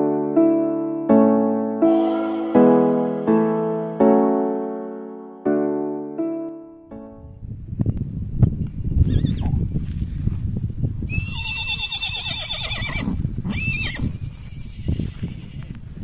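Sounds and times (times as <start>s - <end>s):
horses whinnying: 11.1s - 15.5s.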